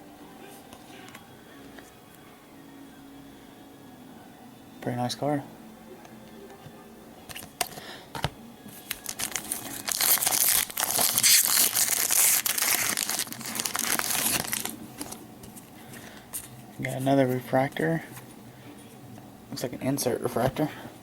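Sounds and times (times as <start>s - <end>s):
wrapper crinkling and tearing: 8.8s - 15.2s.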